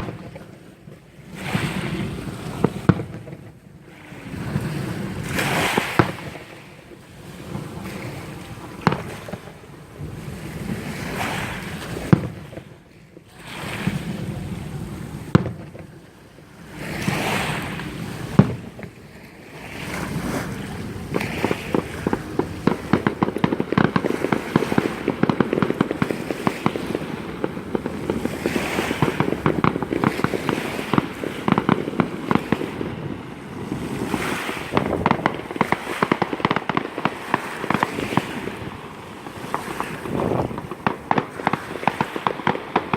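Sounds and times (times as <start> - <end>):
firework crackling: 0.0 - 12.7, 19.8 - 42.9
firework bangs: 0.0 - 12.8, 13.6 - 16.0, 16.7 - 19.0, 19.6 - 42.9
rumbling wash of sound: 20.4 - 42.9.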